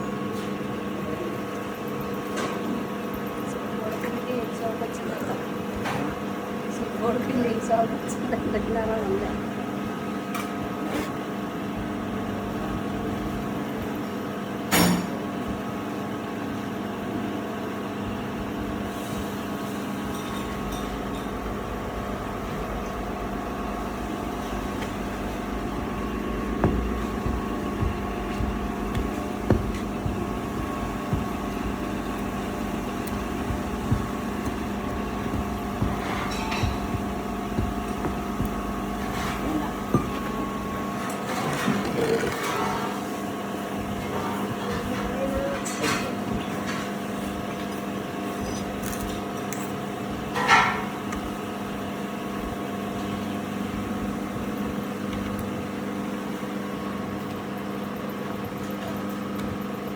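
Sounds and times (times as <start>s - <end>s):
workshop machinery humming: 0.0s - 59.9s
low rumble with knocks: 20.9s - 40.6s.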